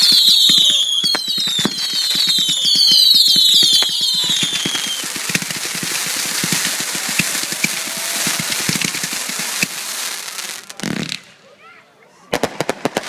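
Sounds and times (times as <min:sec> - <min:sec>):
firework whistles falling in pitch: 0:00.0 - 0:09.7
fireworks crackling and popping: 0:00.0 - 0:11.4, 0:12.3 - 0:13.0.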